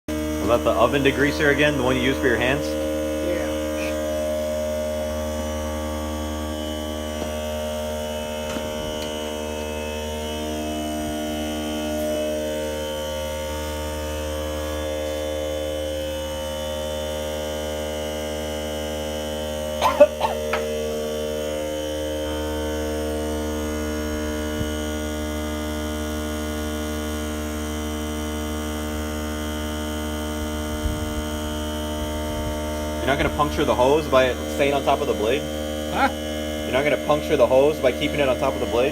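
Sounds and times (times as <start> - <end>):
steady electrical hum: 0.1 - 38.9.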